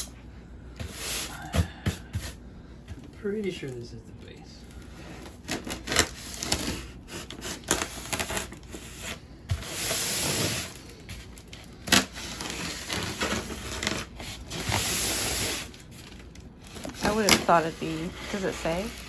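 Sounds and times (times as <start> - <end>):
foam and cardboard scraping: 0.8 - 2.4, 5.1 - 19.0
packaging tearing: 5.2 - 19.0.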